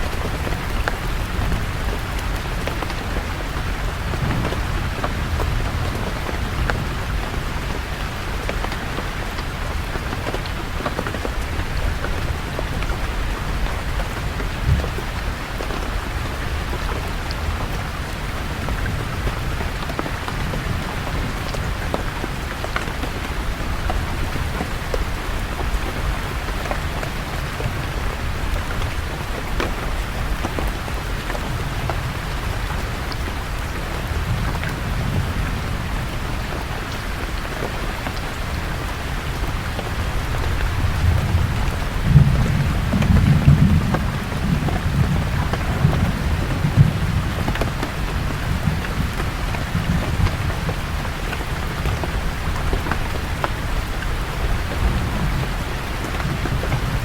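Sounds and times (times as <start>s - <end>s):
rain falling on leaves: 0.0s - 57.0s
distant thunder rumbling: 40.5s - 53.4s.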